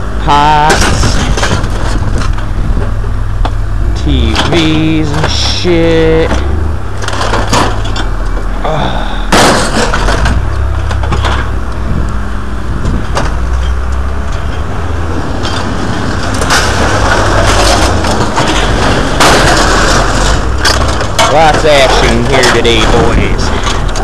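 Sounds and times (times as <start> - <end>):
vehicle engine idling: 0.0 - 24.0
scrap metal clanking: 0.6 - 3.0, 4.0 - 8.6, 9.3 - 11.5, 15.4 - 24.0.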